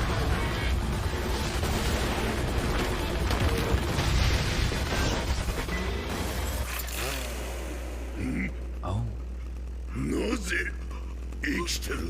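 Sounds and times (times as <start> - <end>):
action soundtrack music: 0.0 - 8.9.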